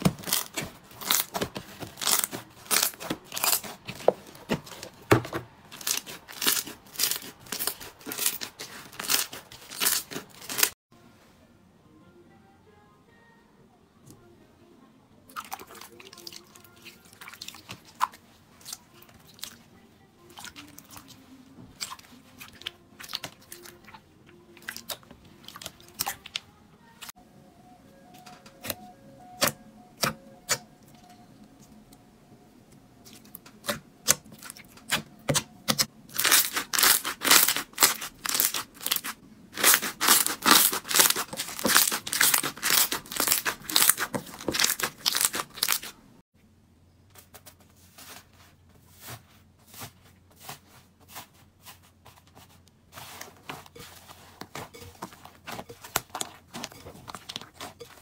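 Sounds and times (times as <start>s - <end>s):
slime crackling and popping: 0.0s - 4.0s, 5.7s - 10.7s, 33.6s - 45.9s.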